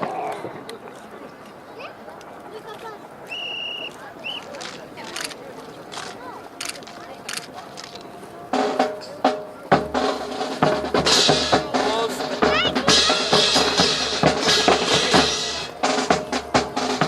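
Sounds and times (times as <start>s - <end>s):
drum-led music: 8.5s - 17.0s.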